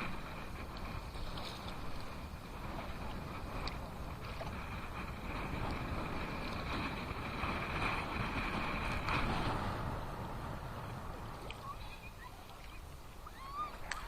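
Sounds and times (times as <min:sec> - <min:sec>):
waves washing on shore: 0:00.0 - 0:14.0
wind rumbling on microphone: 0:00.0 - 0:14.0.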